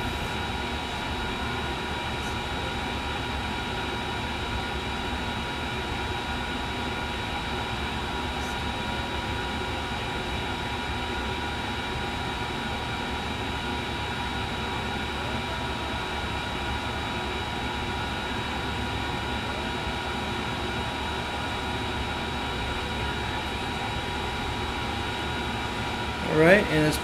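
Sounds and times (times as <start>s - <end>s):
electric fan whirring: 15.9s - 27.0s.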